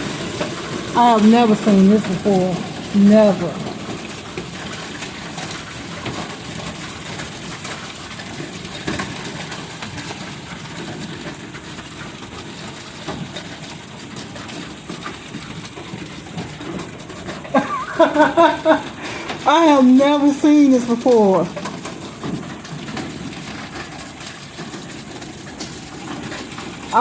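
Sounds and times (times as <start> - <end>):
hail pelting a car: 0.0 - 27.0
rain rushing hiss: 0.0 - 27.0.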